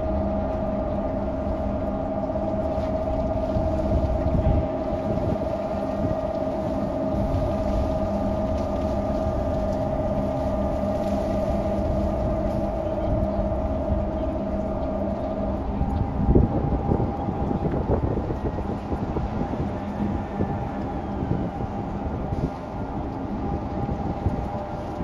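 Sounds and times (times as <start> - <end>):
machinery hum: 0.0 - 25.0
ship engines rumbling: 0.0 - 25.0.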